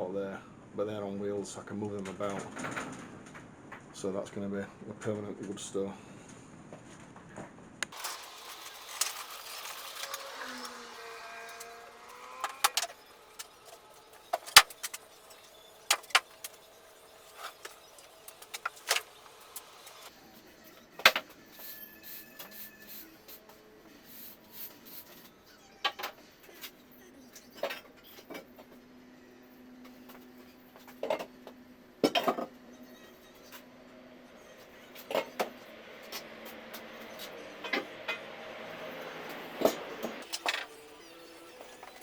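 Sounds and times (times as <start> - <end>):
objects knocking and clattering: 15.9 - 16.6.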